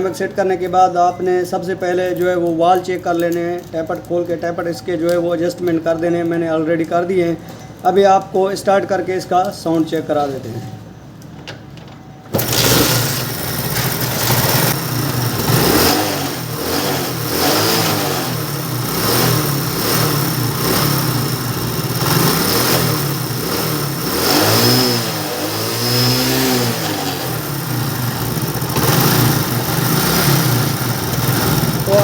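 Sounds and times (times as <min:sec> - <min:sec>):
motorcycle engine revving: 0:12.3 - 0:32.0.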